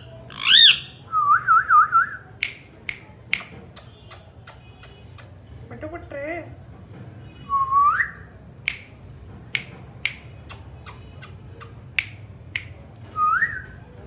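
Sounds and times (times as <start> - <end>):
parakeet sharp clicks: 2.4 - 5.3, 8.7 - 8.9, 9.6 - 12.8.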